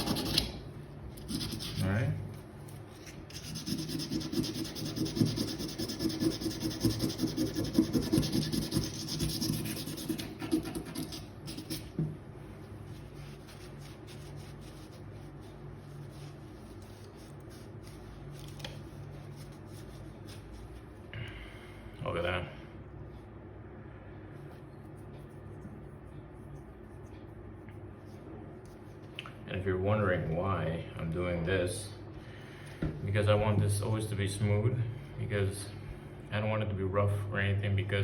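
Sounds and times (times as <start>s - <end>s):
sandpaper scratching metal: 0.0s - 0.6s, 1.2s - 2.0s, 3.3s - 11.9s.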